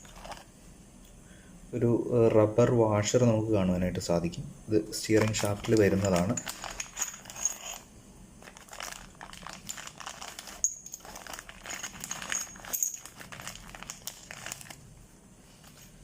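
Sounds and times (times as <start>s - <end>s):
plastic packaging crinkling: 0.0s - 0.5s, 5.1s - 14.9s.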